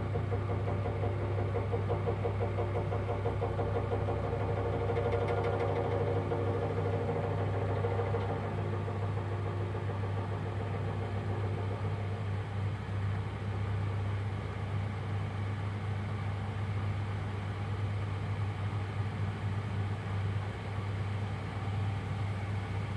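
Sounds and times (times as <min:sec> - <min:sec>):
washing machine rattling: 0:00.0 - 0:12.6
washing machine humming: 0:00.0 - 0:15.0.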